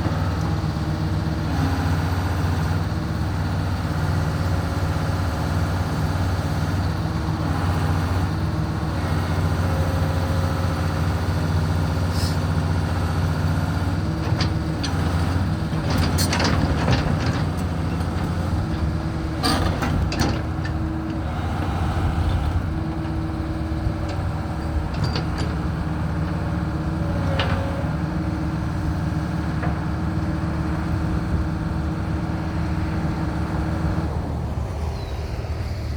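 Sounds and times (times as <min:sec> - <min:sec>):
diesel engine running: 0:00.0 - 0:35.9
metallic clanks and squeaks: 0:15.7 - 0:21.2, 0:24.0 - 0:26.4, 0:27.0 - 0:27.9.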